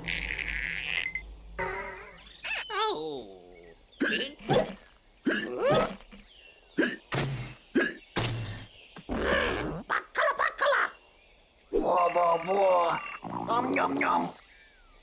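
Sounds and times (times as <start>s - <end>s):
cartoon character grunts and yelps: 1.6s - 6.2s, 9.1s - 11.0s, 11.7s - 14.4s.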